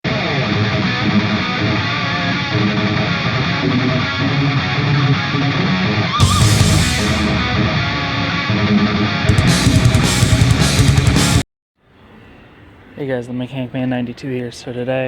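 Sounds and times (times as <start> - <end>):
rock music with electric guitar: 0.1 - 11.4.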